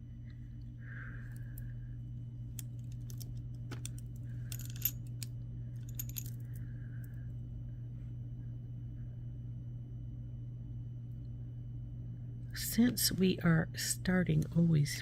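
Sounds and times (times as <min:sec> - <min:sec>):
necklace charms jingling: 0:02.7 - 0:06.4.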